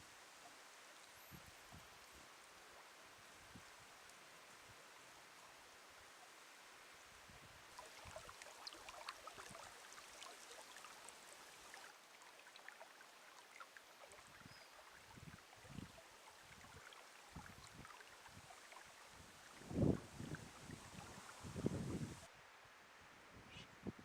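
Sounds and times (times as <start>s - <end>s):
small ticks and crackles: 7.7s - 19.0s
wind buffeting microphone: 19.5s - 22.3s.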